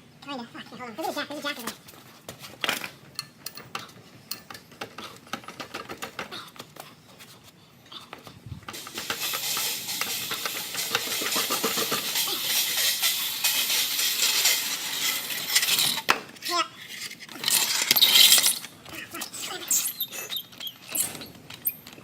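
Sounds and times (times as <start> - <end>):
metal tools clinking: 2.6 - 6.2, 8.8 - 22.0
steady hiss: 8.7 - 15.8.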